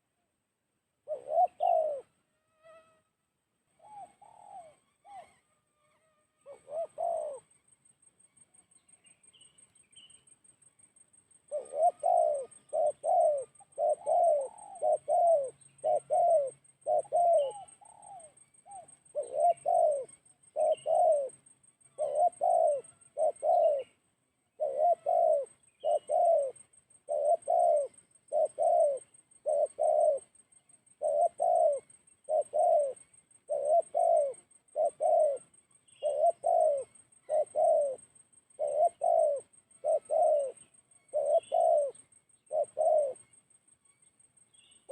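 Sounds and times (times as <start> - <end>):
dove cooing: 1.0 - 2.2, 3.7 - 5.5, 6.4 - 7.5, 11.4 - 43.3
small birds chirping: 1.1 - 2.1, 6.5 - 44.9.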